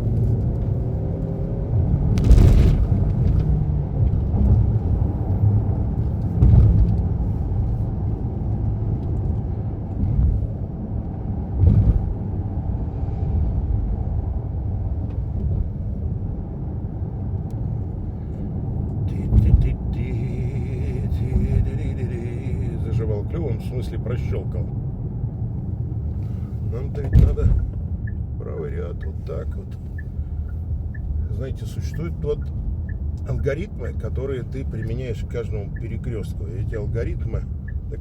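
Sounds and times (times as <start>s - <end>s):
car cabin road and engine rumble: 0.0s - 38.0s.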